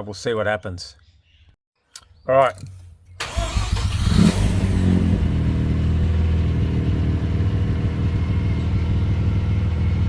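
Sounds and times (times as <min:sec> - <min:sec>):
car engine idling: 0:03.2 - 0:10.0.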